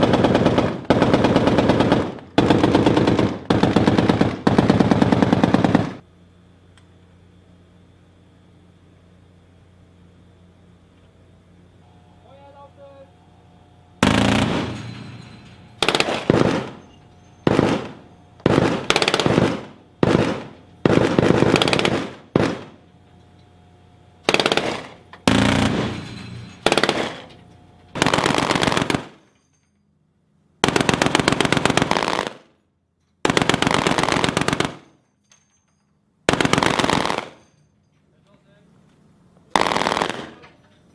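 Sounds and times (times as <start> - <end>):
automatic gun firing bursts: 0.0 - 6.0, 14.0 - 14.8, 15.8 - 16.8, 17.4 - 22.8, 24.3 - 26.0, 26.6 - 27.3, 28.0 - 29.2, 30.6 - 32.5, 33.2 - 35.0, 36.3 - 37.4, 39.5 - 40.4.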